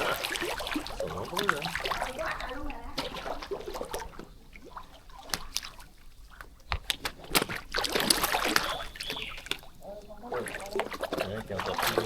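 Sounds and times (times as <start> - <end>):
fish splashing at water surface: 0.0 - 12.0.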